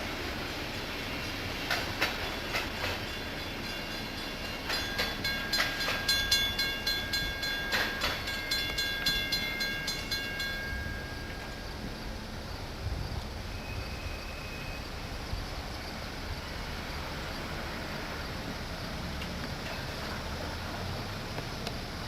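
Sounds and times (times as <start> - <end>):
train wheels clacking over rail joints: 0.0 - 11.9
high ringing tone: 3.0 - 11.9.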